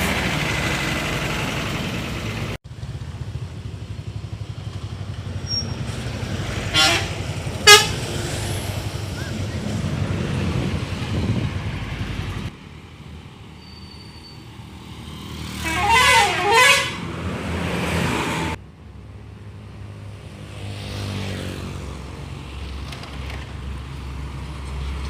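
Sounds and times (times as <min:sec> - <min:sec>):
bus engine rumble: 0:00.0 - 0:20.5, 0:21.8 - 0:25.0
multi-tone bus horn tune: 0:06.7 - 0:08.2, 0:15.5 - 0:17.2.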